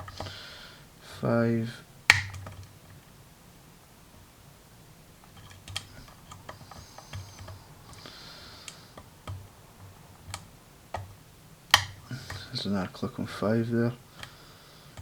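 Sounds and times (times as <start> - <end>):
lock pick clicking: 11.7 - 12.5.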